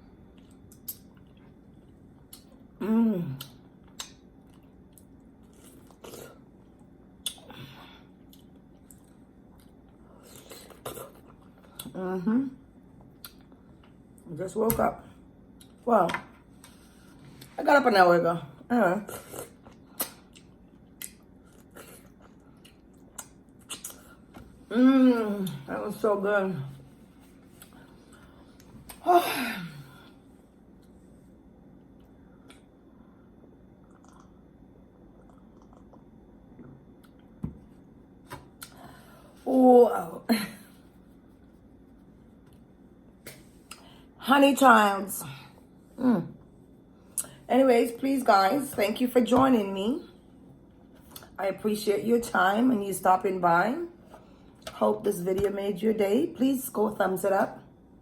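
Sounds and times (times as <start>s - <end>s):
person chewing: 0.3s - 2.6s, 3.4s - 6.5s, 19.2s - 24.6s, 33.8s - 34.4s, 35.1s - 36.1s.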